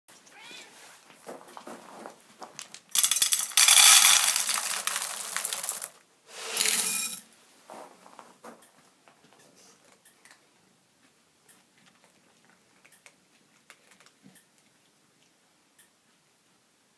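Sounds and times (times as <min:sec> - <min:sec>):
dry cat food pouring into dish: 0:02.9 - 0:07.2.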